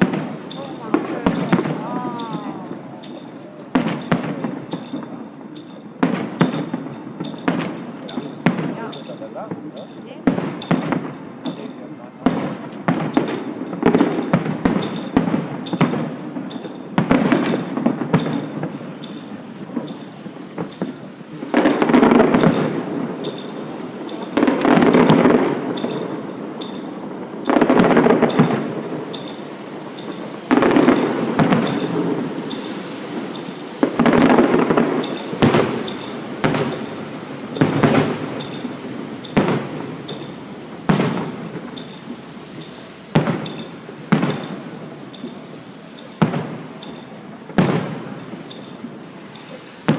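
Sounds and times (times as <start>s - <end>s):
fireworks bangs and cracks: 0.0s - 49.9s.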